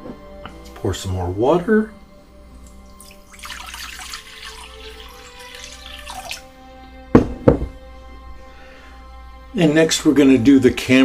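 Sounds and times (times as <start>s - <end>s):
soft background music: 0.0s - 11.0s
water pouring into a bowl: 2.6s - 6.5s
sharp knocks: 7.1s - 7.8s.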